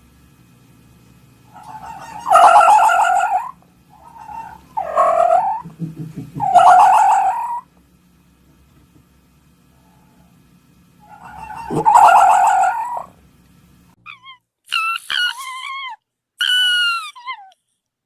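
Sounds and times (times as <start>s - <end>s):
fox calling: 1.6s - 5.7s, 6.4s - 7.7s, 11.0s - 13.1s.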